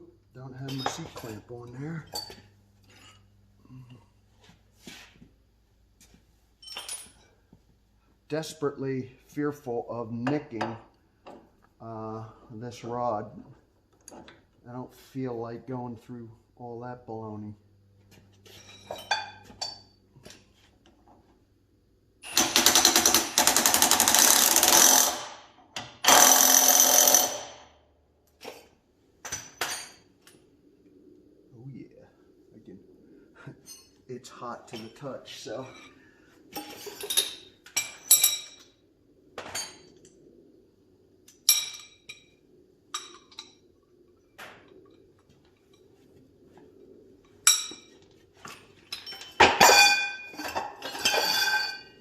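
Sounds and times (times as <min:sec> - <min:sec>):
metal tools scraping: 0:00.6 - 0:03.3, 0:33.5 - 0:34.0, 0:34.7 - 0:38.7, 0:47.4 - 0:52.0
metal parts clinking: 0:06.6 - 0:07.3, 0:48.9 - 0:52.0
impact wrench hammering: 0:22.2 - 0:27.6.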